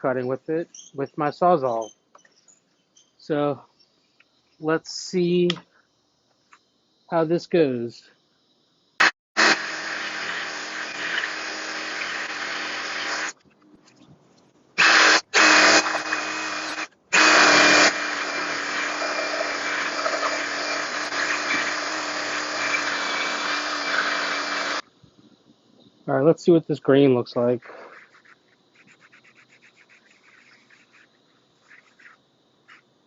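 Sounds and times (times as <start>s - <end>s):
reciprocating saw cutting wood: 9.4s - 13.4s, 14.8s - 24.8s.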